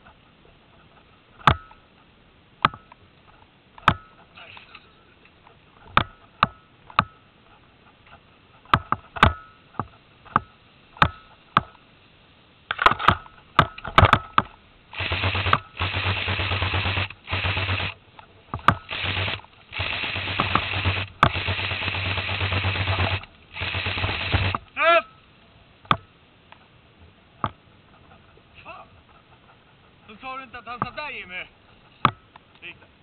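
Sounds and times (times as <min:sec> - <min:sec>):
full-auto airsoft gun bursts: 0:14.9 - 0:18.0, 0:18.7 - 0:24.8.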